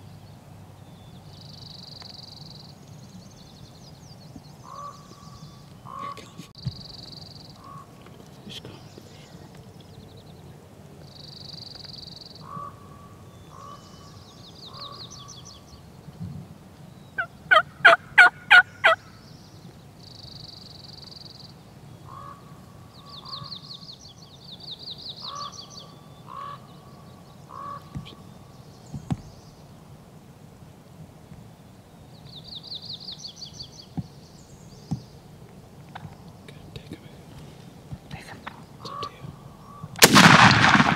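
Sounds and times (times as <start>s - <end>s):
turkey gobbling: 17.2s - 19.0s.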